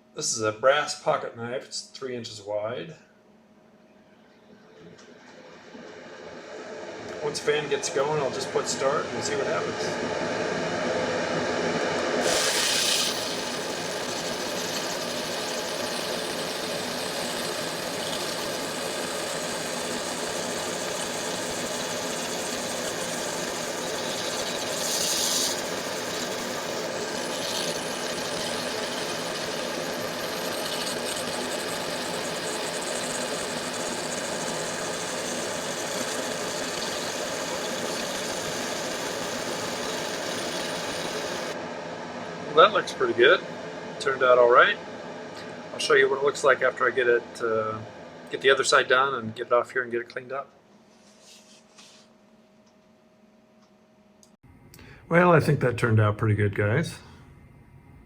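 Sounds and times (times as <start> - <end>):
extraction fan running: 4.5 - 50.3
laser engraver buzzing: 11.6 - 41.6
short hissing bursts: 12.2 - 41.6.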